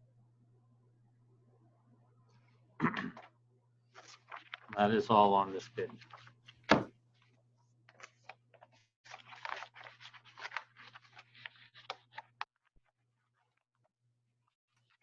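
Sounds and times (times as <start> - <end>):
paper rustling: 3.9 - 13.9.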